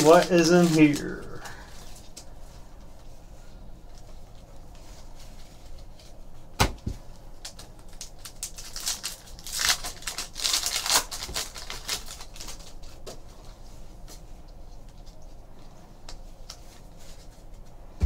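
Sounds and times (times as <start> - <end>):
wrapper crinkling and tearing: 0.0 - 2.2, 7.4 - 13.0
cards rustling: 0.0 - 2.3, 7.4 - 13.6
card pack snapping open: 7.4 - 12.8.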